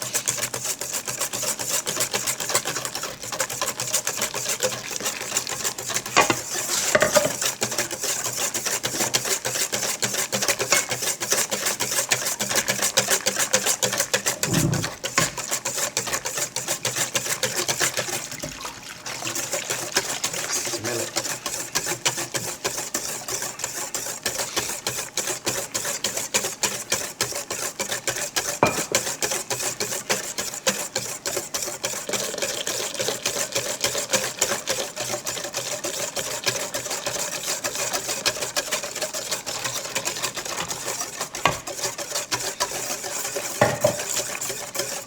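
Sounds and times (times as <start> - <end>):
mixer knocks: 28.6 - 29.0, 43.6 - 44.0.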